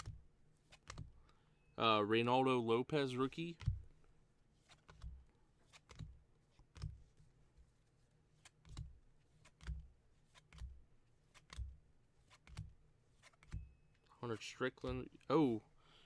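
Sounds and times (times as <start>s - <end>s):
trading cards tapping and clicking: 0.0s - 1.2s, 4.7s - 7.0s, 8.4s - 13.8s.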